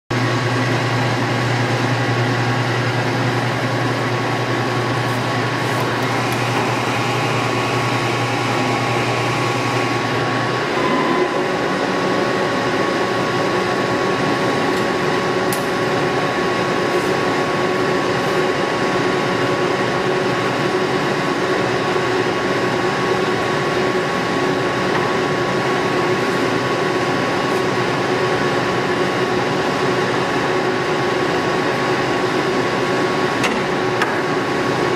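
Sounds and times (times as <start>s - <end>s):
lathe running with mechanical hum: 0.1s - 34.9s
higher steady tone: 10.4s - 13.5s.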